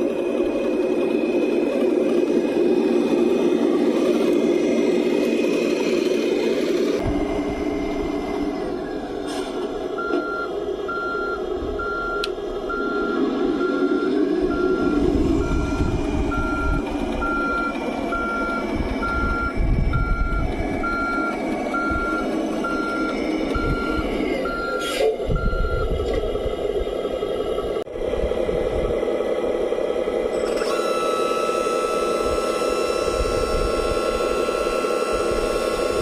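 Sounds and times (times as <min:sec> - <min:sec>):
simulated diesel engine running: 0:00.0 - 0:36.0
reversing beeps: 0:10.0 - 0:25.9, 0:30.6 - 0:36.0.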